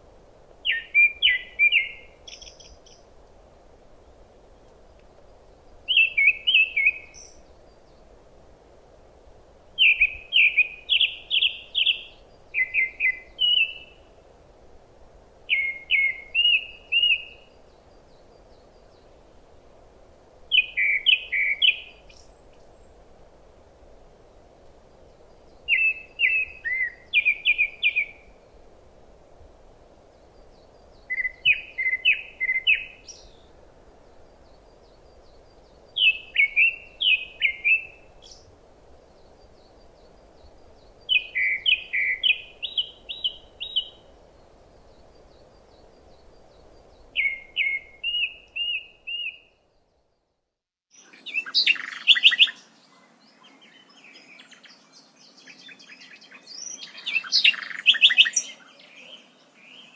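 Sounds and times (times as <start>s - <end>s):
songbird singing high notes: 9.8s - 14.1s, 15.5s - 17.6s, 31.0s - 33.4s, 36.0s - 38.5s, 40.0s - 44.1s, 45.3s - 49.6s, 50.9s - 52.7s, 53.5s - 59.9s.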